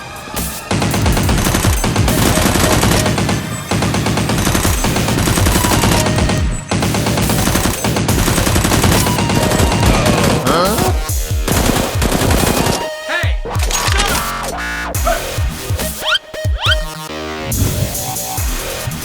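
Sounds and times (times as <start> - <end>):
music: 0.0 - 19.0
rapid automatic gunfire: 0.6 - 12.9.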